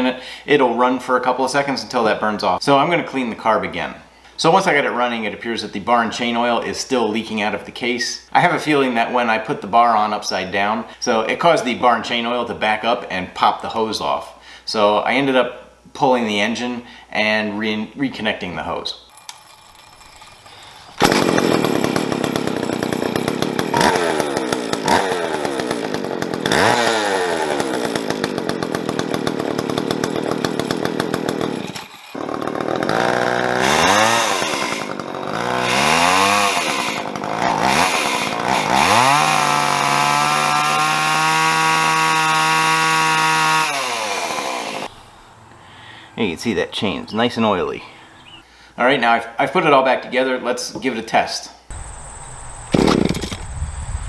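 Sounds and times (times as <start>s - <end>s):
chainsaw engine revving: 19.1s - 45.6s, 51.7s - 54.0s.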